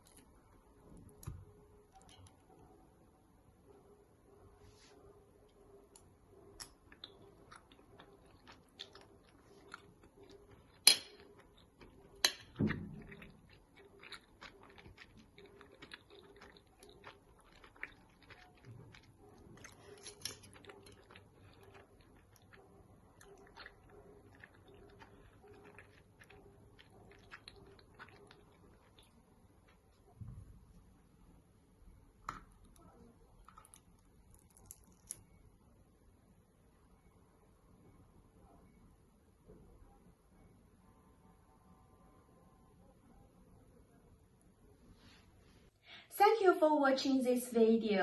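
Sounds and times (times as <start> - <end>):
person chewing food: 6.4 - 30.2, 32.4 - 35.4.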